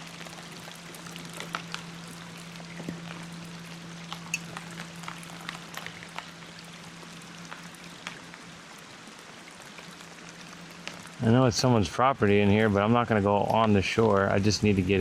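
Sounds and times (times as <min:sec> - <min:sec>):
sharp raindrop hits: 0:00.0 - 0:08.4
rain falling: 0:00.0 - 0:15.0.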